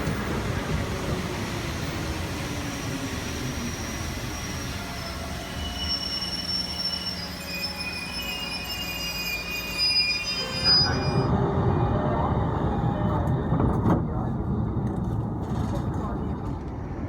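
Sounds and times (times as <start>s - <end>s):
train low rumble: 0.0s - 9.8s, 10.4s - 17.0s
train wheels squealing: 2.0s - 11.3s.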